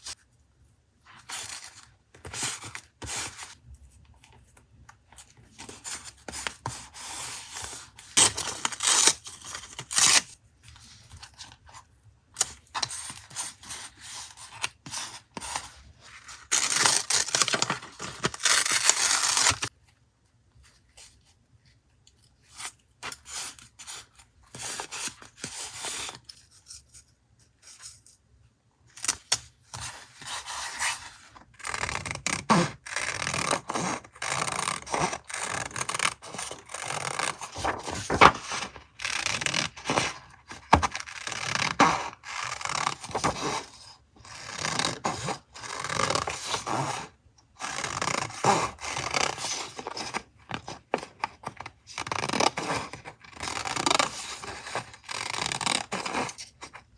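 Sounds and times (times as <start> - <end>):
paper cutting or tearing: 6.6 - 10.3, 16.4 - 19.7, 31.6 - 40.1
paper scraping and rustling: 33.4 - 43.8.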